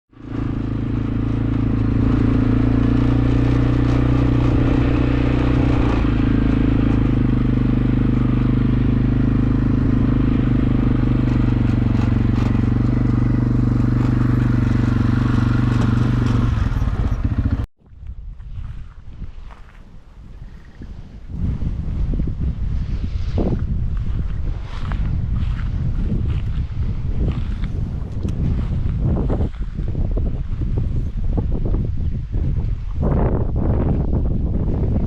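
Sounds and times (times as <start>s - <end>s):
vehicle engine running: 0.1s - 17.7s
wind noise on microphone: 0.1s - 35.0s.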